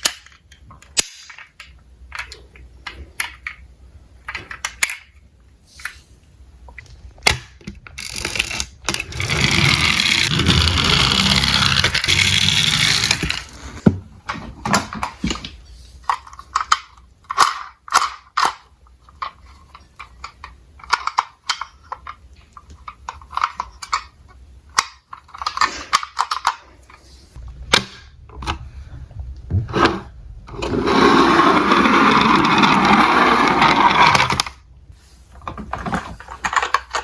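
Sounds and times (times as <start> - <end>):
toy cars clicking together: 7.9 - 13.6
toy car rolling down slope: 8.0 - 13.8, 30.6 - 34.6.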